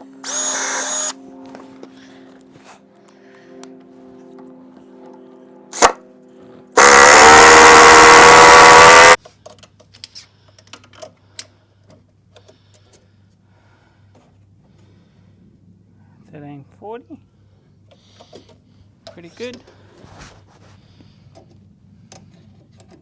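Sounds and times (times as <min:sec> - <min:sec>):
power drill drilling into wood: 0:00.2 - 0:01.2, 0:05.8 - 0:06.0, 0:06.8 - 0:09.2
sharp click: 0:05.8 - 0:06.0.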